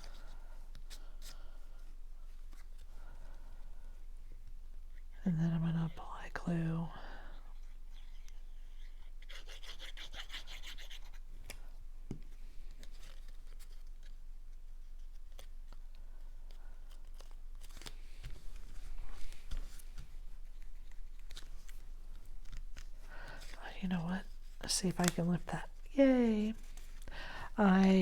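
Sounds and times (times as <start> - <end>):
paper rubbing: 17.0 - 27.1.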